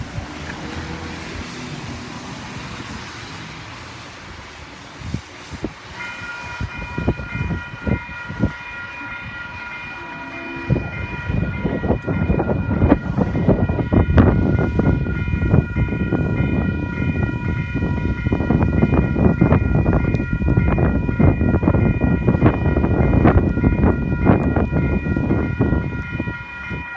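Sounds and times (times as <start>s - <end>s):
locomotive engine rumble: 0.0s - 26.9s
steady high chord: 6.0s - 22.9s.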